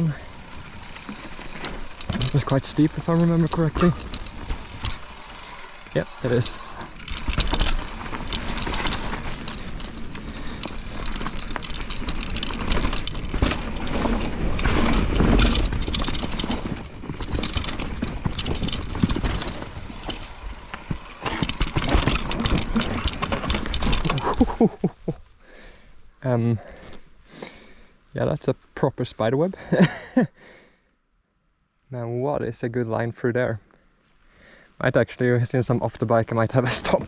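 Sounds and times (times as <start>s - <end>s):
bike knocking and rattling: 0.0s - 25.2s, 36.1s - 37.0s
tyres rumbling on dirt: 0.0s - 25.3s, 35.4s - 37.0s.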